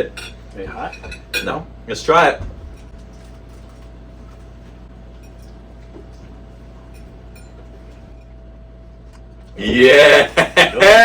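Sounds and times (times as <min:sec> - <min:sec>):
steady low hum: 0:00.0 - 0:11.0.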